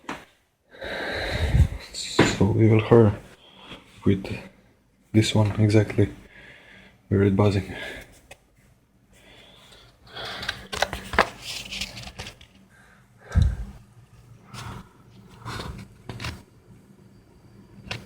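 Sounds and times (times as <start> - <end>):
paper rustling and scraping: 10.2 - 12.6.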